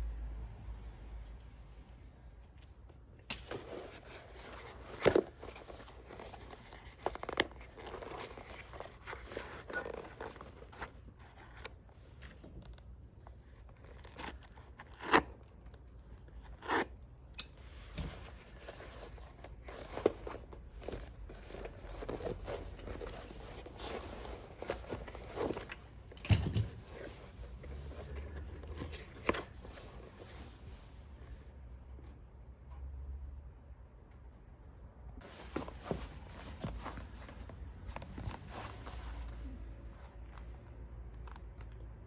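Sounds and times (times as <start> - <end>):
leather tearing and crunching: 13.7 - 15.6.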